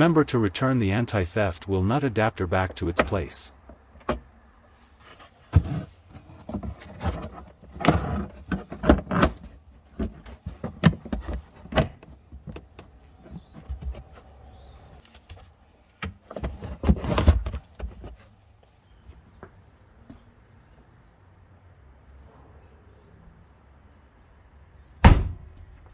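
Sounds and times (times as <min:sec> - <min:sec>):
tools and parts clattering: 0:05.0 - 0:15.4.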